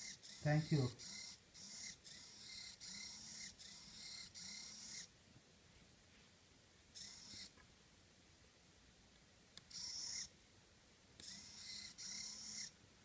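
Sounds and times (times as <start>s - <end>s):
servo whirring in short bursts: 0.0s - 5.1s, 7.0s - 7.5s, 11.2s - 12.8s.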